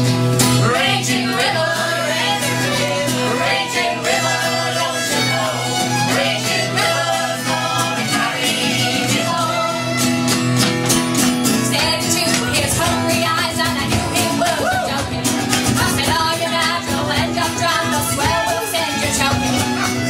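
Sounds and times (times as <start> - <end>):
folk band playing: 0.0 - 20.0
guitar: 0.0 - 20.0
fiddle: 1.0 - 20.0.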